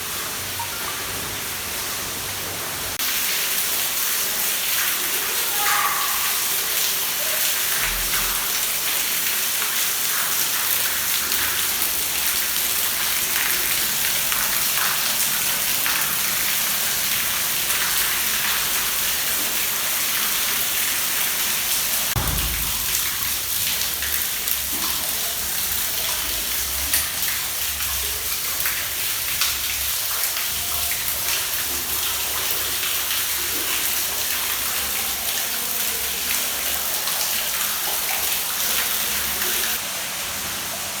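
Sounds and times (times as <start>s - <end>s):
water pouring and splashing: 0.0s - 41.0s
water drips: 2.9s - 39.8s
low thump: 22.2s - 23.5s.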